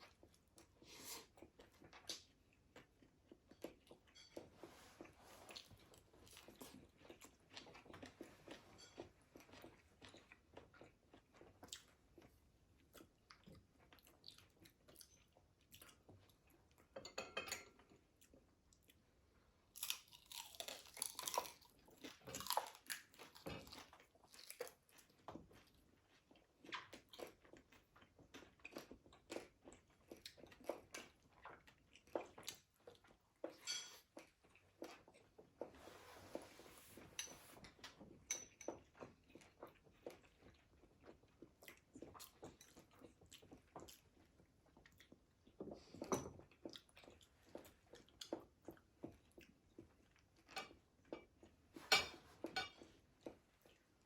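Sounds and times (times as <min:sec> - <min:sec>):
crunching crispy fried food: 0:19.7 - 0:23.6.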